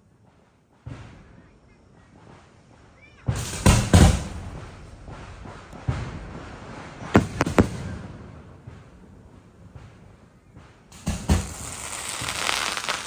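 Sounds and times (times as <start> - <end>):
fireworks bangs: 2.2 - 13.0
rumble: 2.7 - 11.8
sharp firework cracks: 3.4 - 10.2, 10.9 - 13.0.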